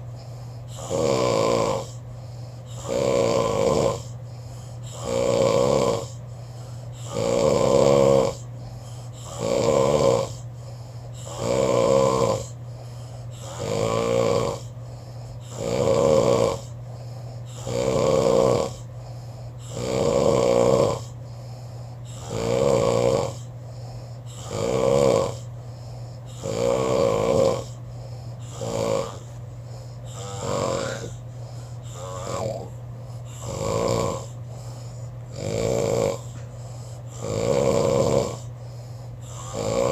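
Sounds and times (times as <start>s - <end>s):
man snoring: 0.0s - 39.9s
steady low hum: 0.0s - 39.9s.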